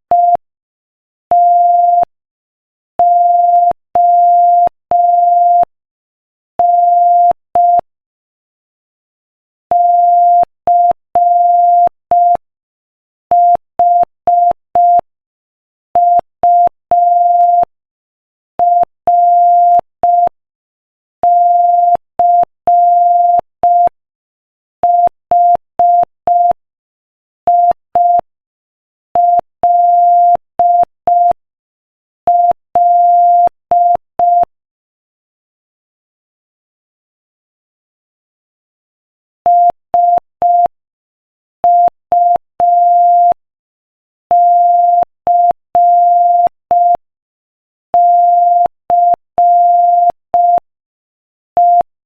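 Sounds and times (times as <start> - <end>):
morse code beeps: 18.6 - 20.3, 21.2 - 23.9, 29.2 - 31.4, 32.3 - 34.5, 39.5 - 40.7, 41.6 - 43.4, 44.3 - 47.0, 48.0 - 50.7, 51.6 - 51.9.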